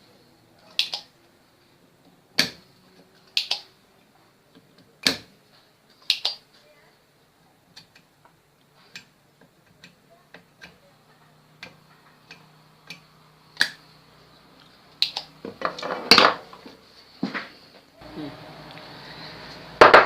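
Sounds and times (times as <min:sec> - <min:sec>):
scraping and clattering: 0:15.5 - 0:17.7.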